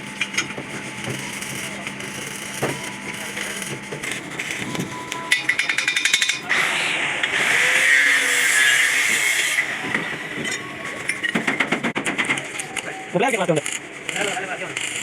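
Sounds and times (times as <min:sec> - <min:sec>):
power tool running: 0:00.0 - 0:11.8.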